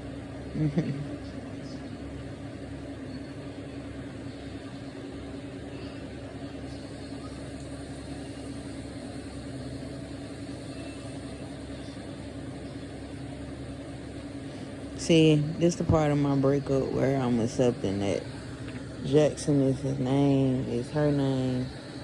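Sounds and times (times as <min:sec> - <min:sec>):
machine hum: 0:00.0 - 0:22.0.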